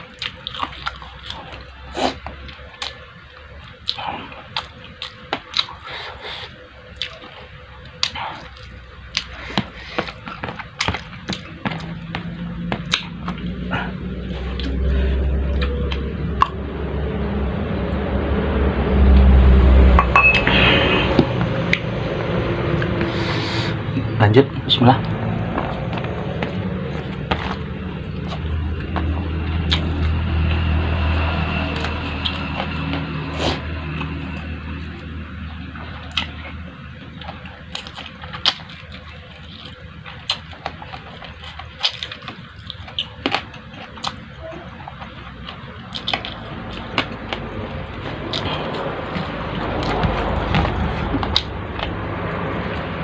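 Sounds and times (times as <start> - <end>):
chewing: 0.0 - 16.6, 25.0 - 53.0
low hum: 0.0 - 53.0
low rumble: 13.3 - 23.2.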